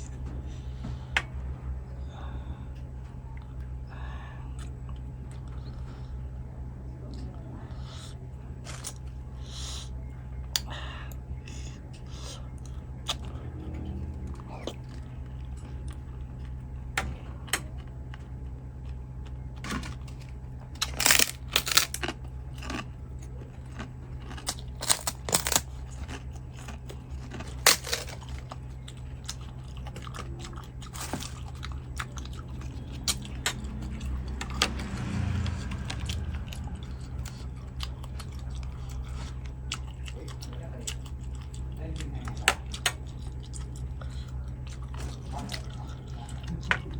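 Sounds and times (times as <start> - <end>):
person chewing: 4.4 - 6.3, 7.7 - 46.9
sharp crunches: 20.8 - 22.9, 23.7 - 28.6.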